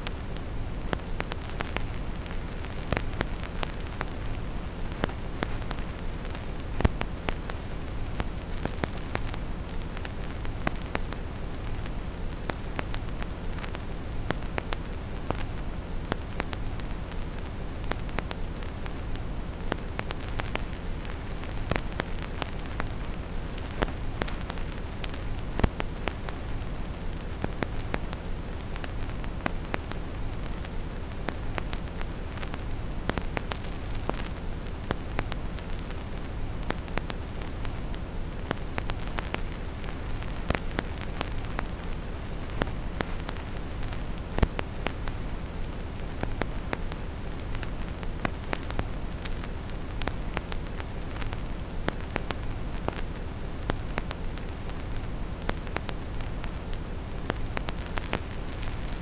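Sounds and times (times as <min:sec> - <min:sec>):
vinyl record crackle: 0:00.0 - 0:59.0.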